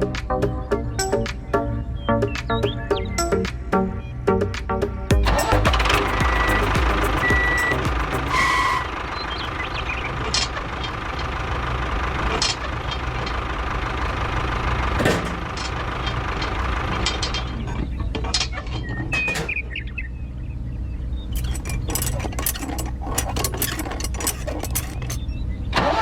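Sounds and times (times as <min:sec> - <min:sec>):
small engine running: 0:05.1 - 0:17.6, 0:21.4 - 0:25.2
clicks and knocks: 0:21.4 - 0:25.2.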